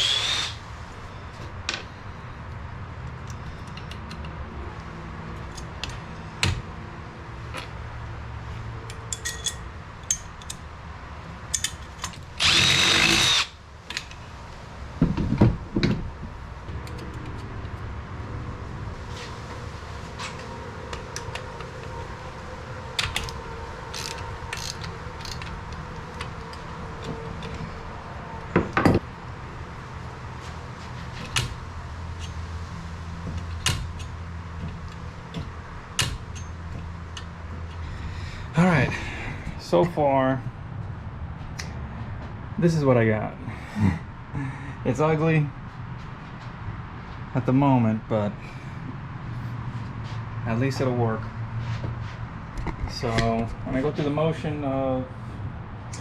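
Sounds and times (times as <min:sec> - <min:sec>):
power drill bursts: 0:00.0 - 0:00.6, 0:12.4 - 0:13.6.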